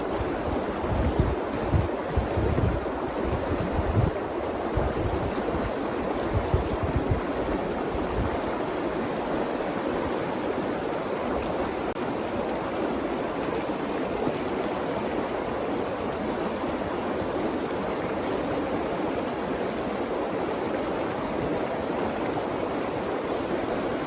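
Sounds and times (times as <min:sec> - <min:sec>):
wind buffeting microphone: 0:00.0 - 0:08.6
river water flowing: 0:07.1 - 0:24.0.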